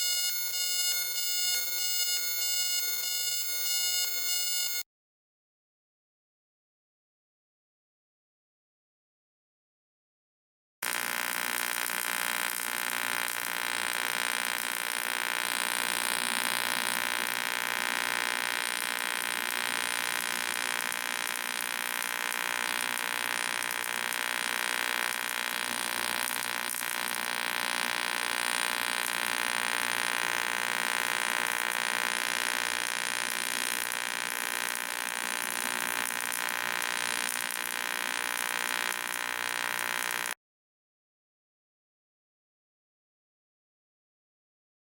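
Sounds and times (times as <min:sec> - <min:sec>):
welding arc buzzing: 0:00.0 - 0:04.8, 0:10.8 - 0:40.4.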